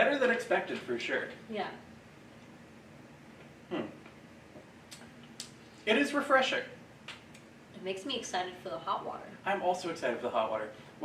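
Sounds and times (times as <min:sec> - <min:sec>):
person making short vocal sound: 0:03.7 - 0:04.0.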